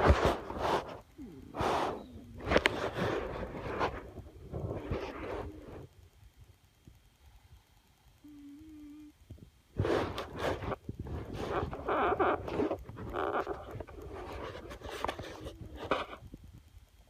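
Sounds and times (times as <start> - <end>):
pet snoring: 0.0 - 5.9.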